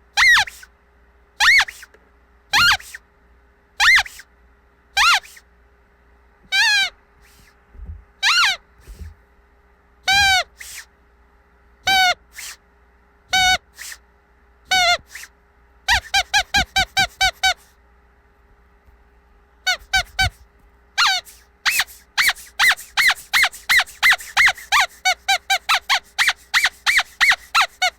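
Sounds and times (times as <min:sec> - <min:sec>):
squeaky dog toy squeaking: 0:00.1 - 0:00.7, 0:01.4 - 0:01.9, 0:02.5 - 0:03.0, 0:03.8 - 0:04.3, 0:05.0 - 0:05.4, 0:06.5 - 0:07.5, 0:08.2 - 0:09.1, 0:10.0 - 0:10.9, 0:11.8 - 0:12.6, 0:13.3 - 0:14.0, 0:14.7 - 0:15.3, 0:15.9 - 0:17.7, 0:19.6 - 0:20.4, 0:21.0 - 0:27.9.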